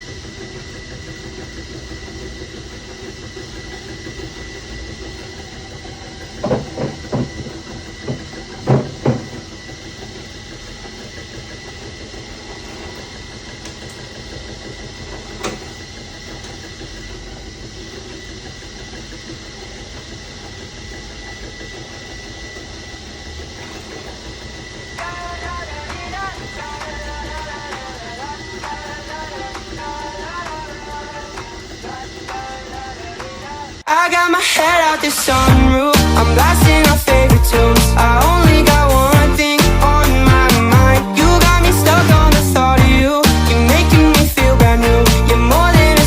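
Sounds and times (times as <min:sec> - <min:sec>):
drill press humming and whining: 0:00.0 - 0:46.0
loud knocks: 0:06.4 - 0:09.5.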